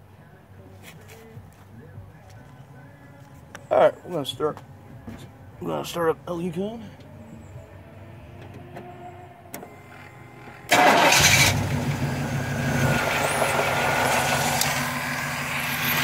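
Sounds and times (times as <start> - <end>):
engine idling: 6.6 - 16.0
engine cranking: 8.4 - 14.8.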